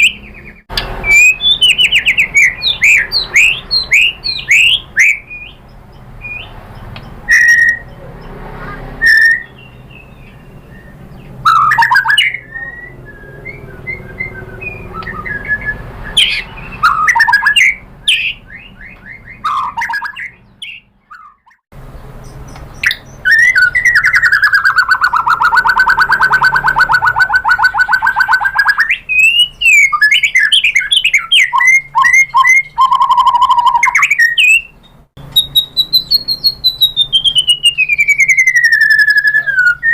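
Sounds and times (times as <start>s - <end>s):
songbird singing whistled phrases: 0.0s - 21.6s, 22.2s - 39.9s.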